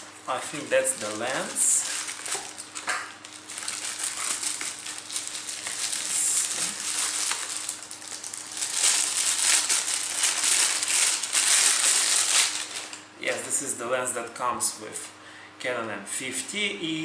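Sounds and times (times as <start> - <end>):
plastic packaging crinkling: 0.0 - 13.5.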